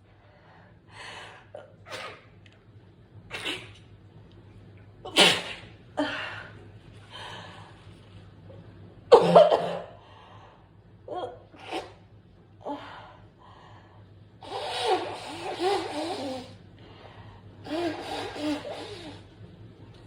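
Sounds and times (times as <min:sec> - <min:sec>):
person sneezing: 0:05.1 - 0:05.7.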